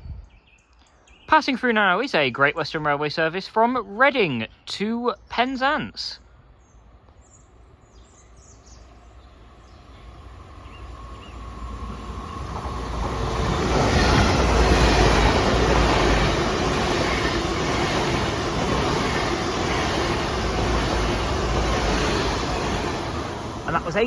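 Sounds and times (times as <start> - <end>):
train passing: 6.8 - 24.0
wheels rushing on rail: 7.5 - 24.0.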